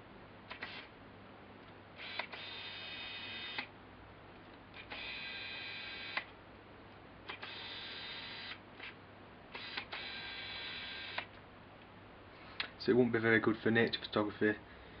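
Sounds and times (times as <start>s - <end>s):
lens clicks: 0.5s - 0.9s, 2.0s - 3.7s, 7.3s - 10.2s
autofocus motor whirring: 2.0s - 3.7s, 4.8s - 6.3s, 7.3s - 11.3s.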